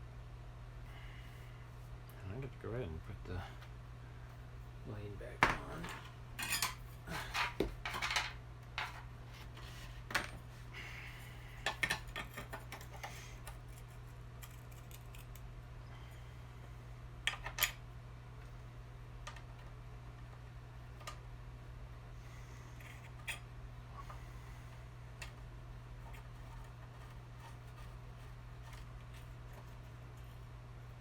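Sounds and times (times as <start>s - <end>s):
metal parts clinking: 5.9s - 9.0s.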